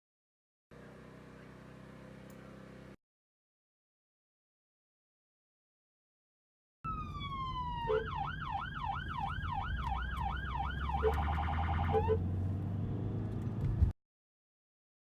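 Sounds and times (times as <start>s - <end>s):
police siren wailing: 6.8s - 12.3s
low engine hum: 6.9s - 14.0s.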